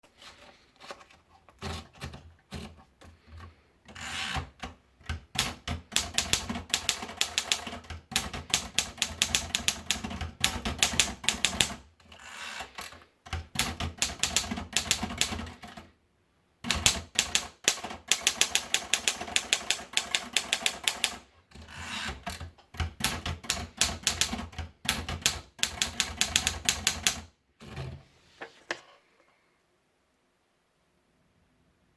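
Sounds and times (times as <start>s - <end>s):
typewriter key strikes: 16.7s - 21.2s, 22.8s - 27.2s.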